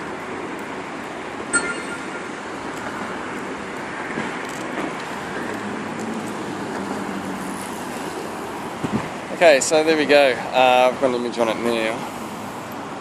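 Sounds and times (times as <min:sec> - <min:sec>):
city traffic hum: 0:00.0 - 0:13.0
brief high tone: 0:01.5 - 0:03.2.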